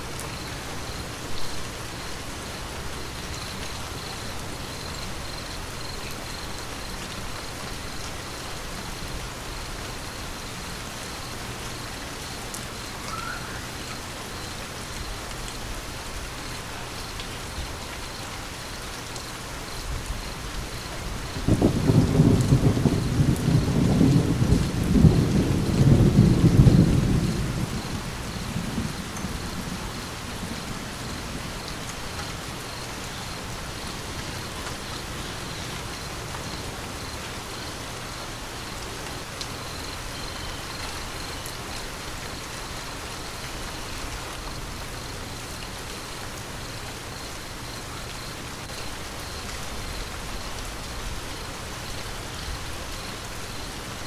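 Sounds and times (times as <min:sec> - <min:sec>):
steady rain: 0:00.0 - 0:54.0
thunder rumbling: 0:21.0 - 0:32.6.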